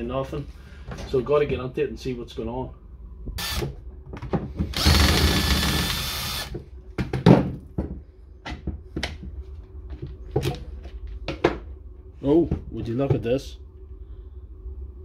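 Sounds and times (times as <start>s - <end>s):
power screwdriver whirring: 3.4s - 3.7s, 4.8s - 6.5s.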